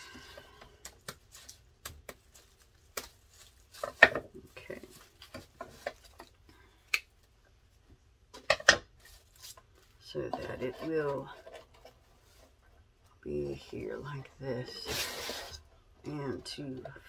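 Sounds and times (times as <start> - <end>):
material rustling: 1.0 - 6.4, 9.0 - 12.7.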